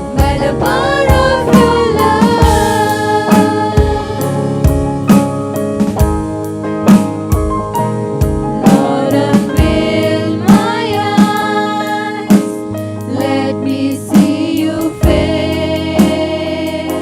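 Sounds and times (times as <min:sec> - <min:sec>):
voices singing gospel: 0:00.0 - 0:04.7, 0:08.6 - 0:17.0
steady drum beat: 0:00.0 - 0:13.3, 0:14.2 - 0:17.0
keyboard chords: 0:00.0 - 0:17.0.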